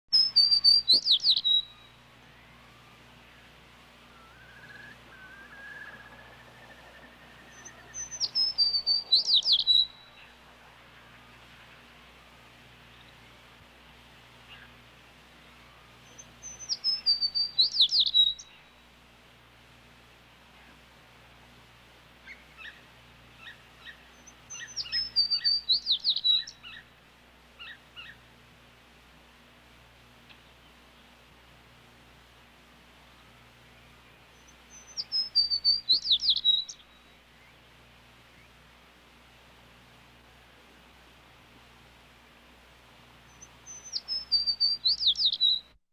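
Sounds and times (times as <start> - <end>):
sparrow chirps: 0.1 - 2.0, 5.8 - 10.4, 16.0 - 18.7, 23.4 - 26.9, 34.4 - 37.1, 43.3 - 45.8
sparrow warbling trill: 4.1 - 10.4.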